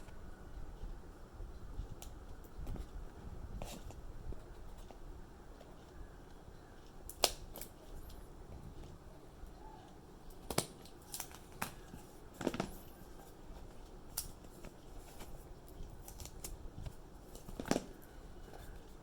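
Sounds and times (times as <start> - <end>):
packaging rustling: 10.8 - 19.0.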